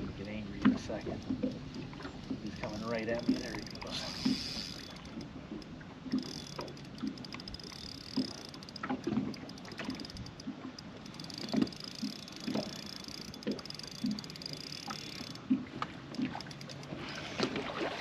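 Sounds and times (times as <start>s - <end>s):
water lapping against hull: 0.0s - 18.0s.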